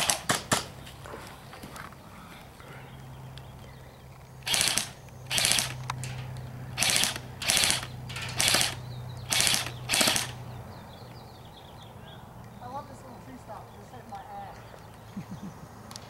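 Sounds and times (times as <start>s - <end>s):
airsoft rifle full-auto bursts: 0.0s - 0.6s, 4.4s - 10.5s.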